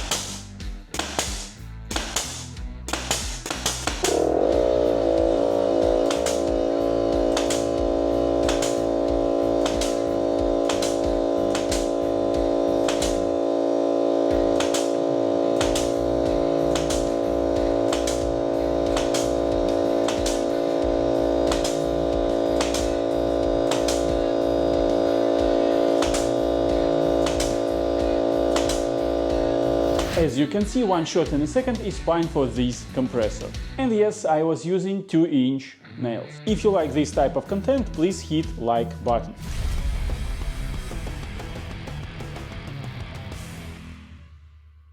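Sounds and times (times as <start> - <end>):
nail gun firing snaps: 0.0 - 4.4, 6.0 - 6.7, 7.3 - 12.2, 12.8 - 13.4, 14.3 - 20.6, 21.4 - 24.3, 25.9 - 27.7, 28.4 - 29.0
air compressor droning: 0.0 - 30.8.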